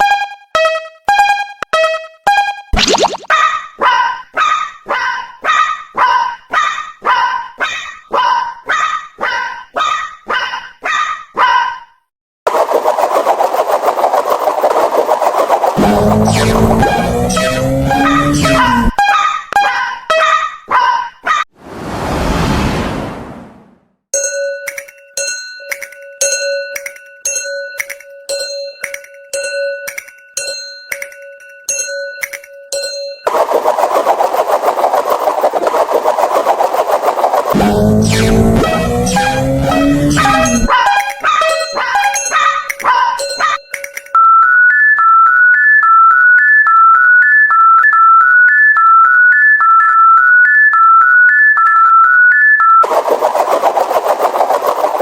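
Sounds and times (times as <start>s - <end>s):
fast-fluttering noise: 2.8s - 3.3s, 12.5s - 18.9s, 33.3s - 40.7s, 52.8s - 55.0s
level crossing bell clanging: 41.2s - 44.2s.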